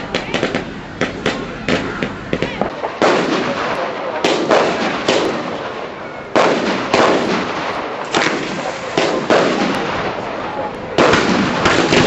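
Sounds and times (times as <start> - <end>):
firework shells bursting: 0.0 - 10.3
rolling echo: 0.0 - 12.0.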